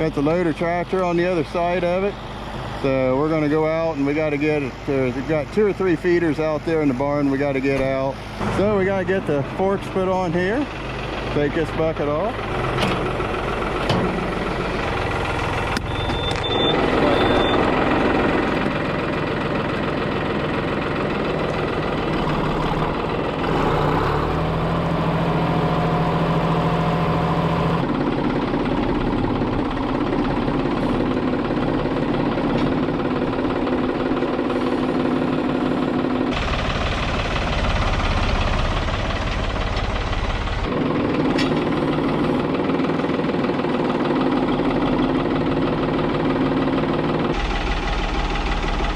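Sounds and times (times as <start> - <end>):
tractor engine running: 0.0 - 48.9
short high beeps: 15.8 - 17.7.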